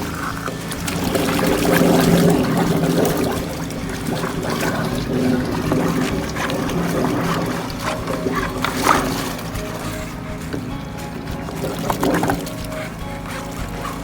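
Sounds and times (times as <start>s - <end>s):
water rushing through pipe: 0.0s - 14.0s.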